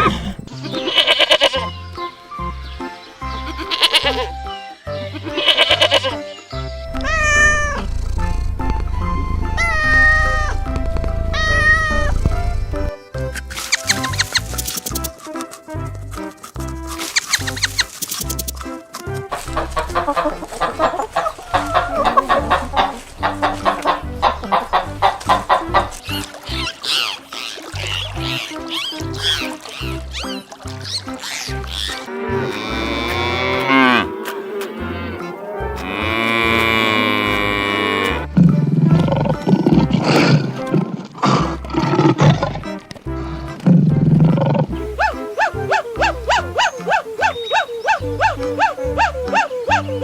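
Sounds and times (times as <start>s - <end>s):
background music with bass line: 0.0s - 26.9s, 27.8s - 50.0s
big cat roaring and growling: 7.0s - 10.4s, 31.9s - 42.7s
chickens clucking: 19.3s - 30.4s, 44.7s - 50.0s
animal chirping: 19.3s - 32.7s, 44.7s - 50.0s.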